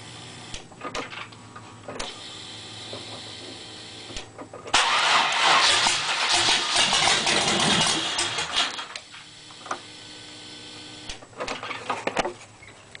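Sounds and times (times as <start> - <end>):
rough car engine running: 4.6 - 10.9.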